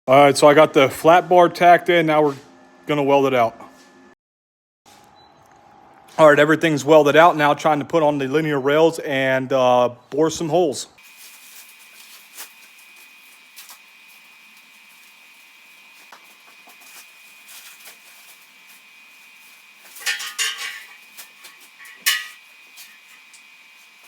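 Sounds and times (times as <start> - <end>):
steel parts clinking: 20.0 - 23.4.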